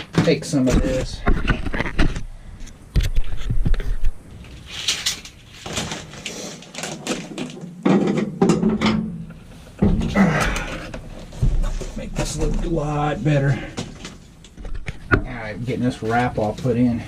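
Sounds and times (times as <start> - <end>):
wrap material rustling and scraping: 3.2 - 6.8.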